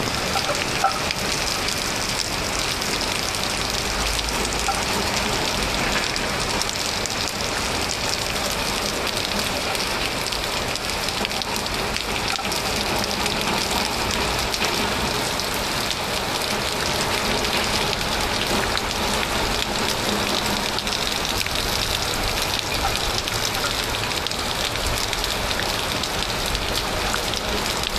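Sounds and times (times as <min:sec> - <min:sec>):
rain patter on surfaces: 0:00.0 - 0:27.9.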